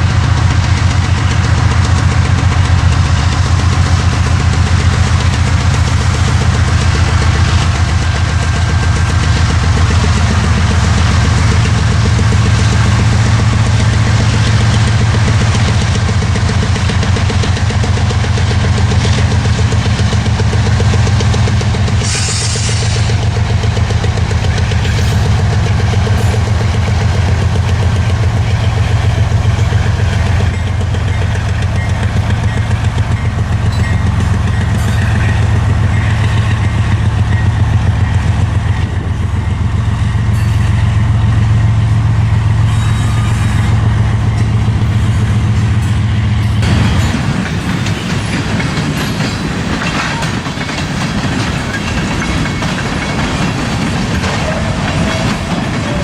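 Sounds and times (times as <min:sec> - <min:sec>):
freight cars rattling: 0:00.0 - 0:56.0
locomotive engine drone: 0:00.0 - 0:56.0.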